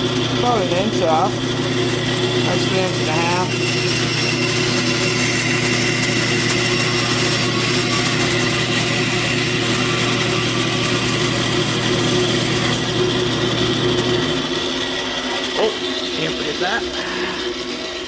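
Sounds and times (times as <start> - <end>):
power tool motor humming: 0.0 - 18.0.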